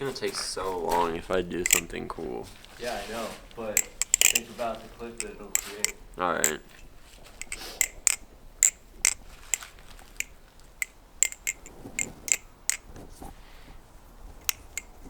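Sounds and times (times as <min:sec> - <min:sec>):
butterfly knife metallic clicks: 0:01.6 - 0:01.9, 0:03.8 - 0:04.5, 0:05.1 - 0:12.9, 0:14.4 - 0:15.0.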